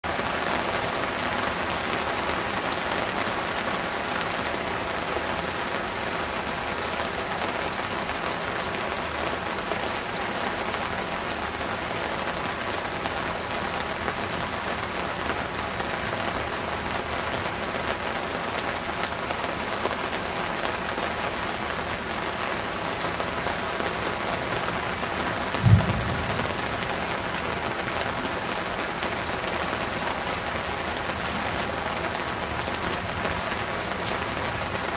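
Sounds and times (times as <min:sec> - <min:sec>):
heavy rain downpour: 0:00.0 - 0:34.9
loud low thump: 0:25.6 - 0:27.4.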